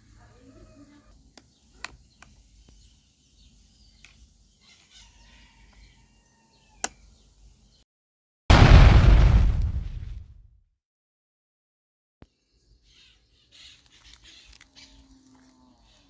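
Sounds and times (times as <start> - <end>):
faint bird calls: 0.0 - 7.2, 12.8 - 16.0
loud blast: 8.5 - 10.3.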